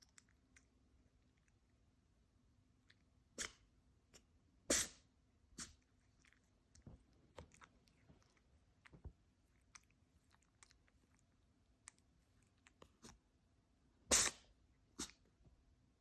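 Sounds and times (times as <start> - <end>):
cat sneezing: 3.3 - 3.7, 4.6 - 5.8, 14.0 - 15.3.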